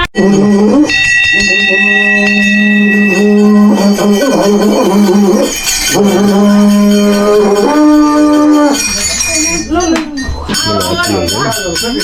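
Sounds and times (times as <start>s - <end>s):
small bells jingling: 0.0s - 12.0s.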